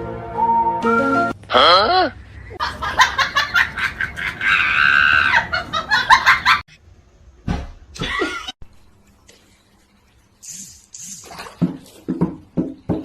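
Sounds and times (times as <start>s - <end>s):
rapid laughter: 2.6s - 6.6s
shrill scream: 4.4s - 5.5s.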